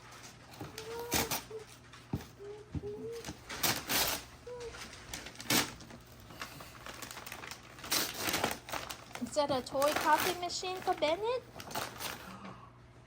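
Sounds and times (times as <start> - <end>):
wrapping paper rustling: 0.0 - 12.4
toddler cooing and babbling: 0.6 - 3.4, 4.4 - 4.9.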